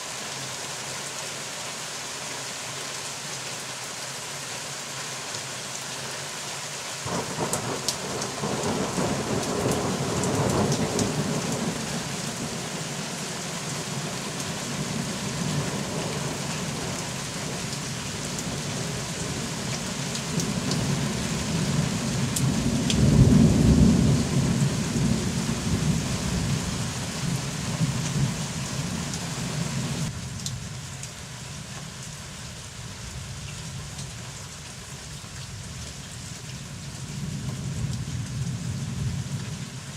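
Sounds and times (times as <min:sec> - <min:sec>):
steady rain: 0:00.0 - 0:39.9
rolling thunder: 0:07.1 - 0:12.6, 0:20.3 - 0:28.4.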